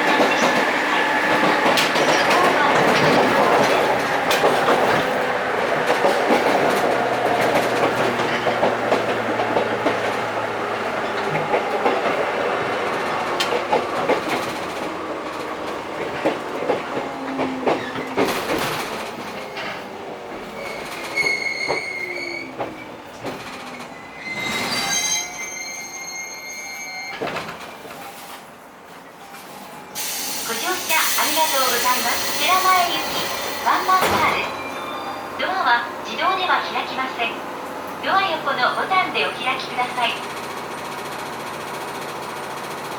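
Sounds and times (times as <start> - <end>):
train wheels clickety-clack: 0.0 - 24.8, 37.9 - 42.9
wheel and brake squeal: 20.6 - 22.6, 23.9 - 28.2.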